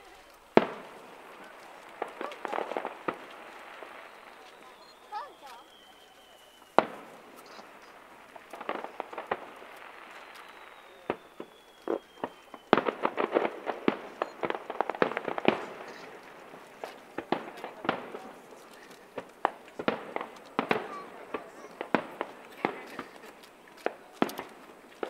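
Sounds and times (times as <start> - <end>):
fireworks bangs and crackling: 0.0 - 25.0.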